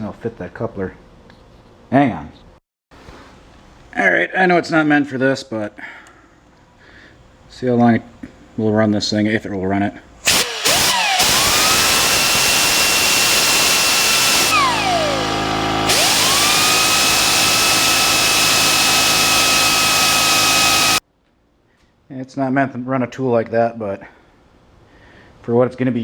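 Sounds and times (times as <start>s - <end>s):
pneumatic rotary tool whine: 10.2s - 21.0s
air tool trigger taps: 10.3s - 21.0s.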